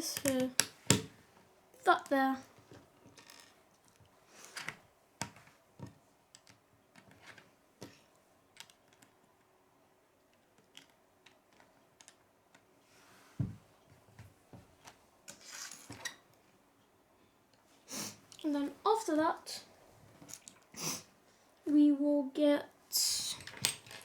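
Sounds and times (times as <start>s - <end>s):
plastic bricks clicking together: 0.1s - 1.1s, 10.3s - 12.6s, 23.4s - 24.0s.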